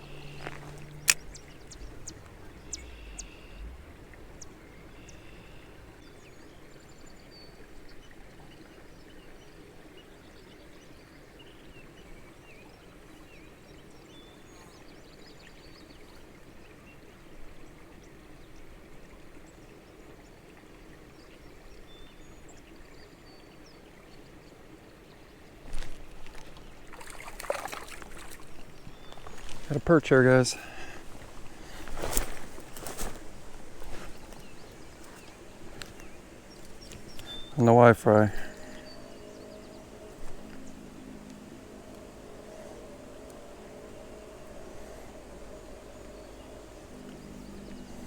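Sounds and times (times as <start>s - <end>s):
light ticks: 0.0s - 3.4s
steady low rush: 0.0s - 7.2s, 28.7s - 48.0s.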